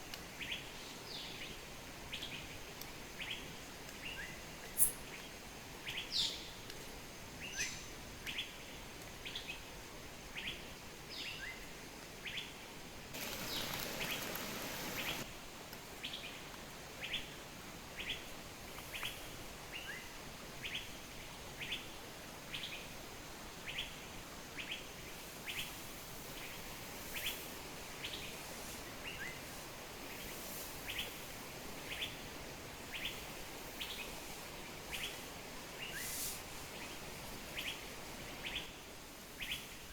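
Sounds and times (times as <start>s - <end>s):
faint background hiss: 0.0s - 39.9s
bird chirping: 13.2s - 15.2s.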